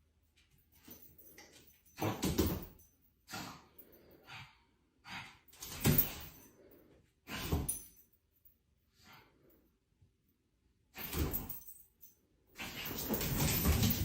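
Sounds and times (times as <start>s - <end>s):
dog breathing heavily: 3.3s - 7.9s.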